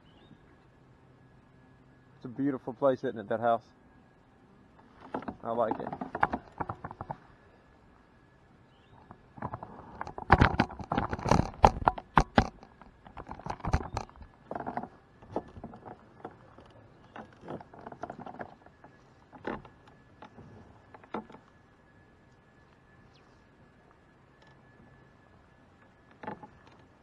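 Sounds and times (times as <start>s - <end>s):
gear knocking on plastic hull: 5.0s - 7.2s, 9.4s - 20.4s.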